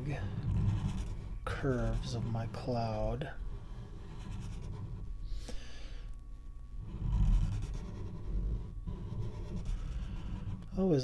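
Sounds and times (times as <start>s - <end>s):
steady low rumble: 0.0s - 5.4s
person breathing: 5.2s - 6.2s.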